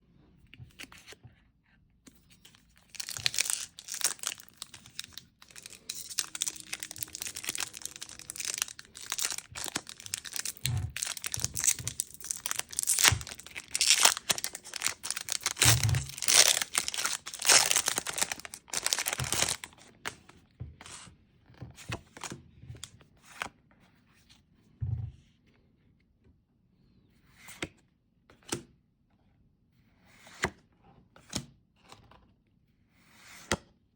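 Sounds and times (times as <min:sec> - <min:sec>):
foil wrapper tearing and crinkling: 0:02.8 - 0:20.1.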